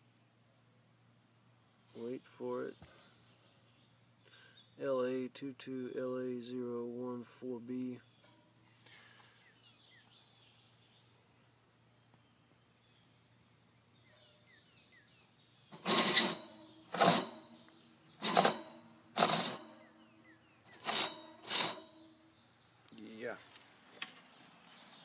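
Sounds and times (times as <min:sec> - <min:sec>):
high insect trill: 0:00.0 - 0:23.9
metal scraping strokes: 0:15.7 - 0:17.6, 0:18.2 - 0:19.9, 0:20.7 - 0:22.0.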